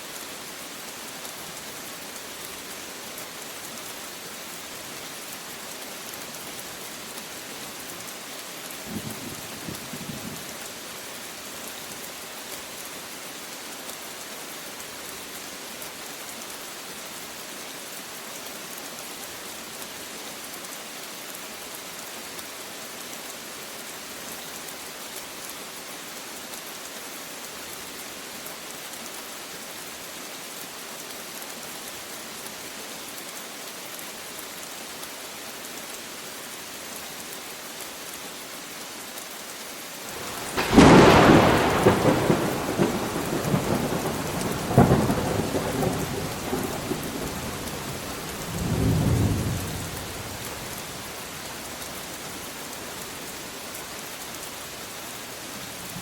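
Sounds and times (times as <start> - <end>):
steady rain hissing: 0.0 - 56.0
thunder crashing and rumbling: 40.2 - 47.2.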